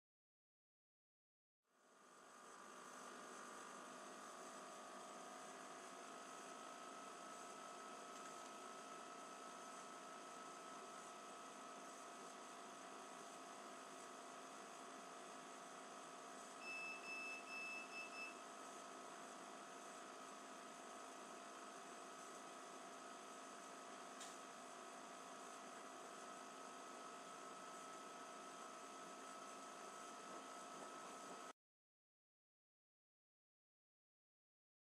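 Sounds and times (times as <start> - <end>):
short high-pitched buzzer beeps: 16.6 - 18.4.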